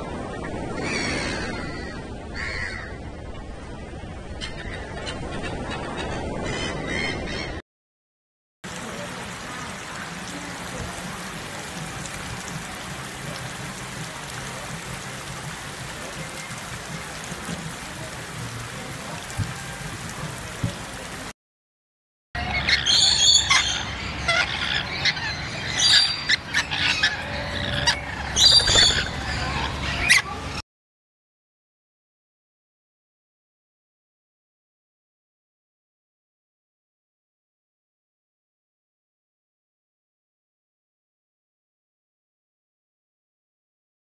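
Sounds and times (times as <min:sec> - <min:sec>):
outdoor background noise: 0:08.6 - 0:21.3, 0:22.4 - 0:30.6.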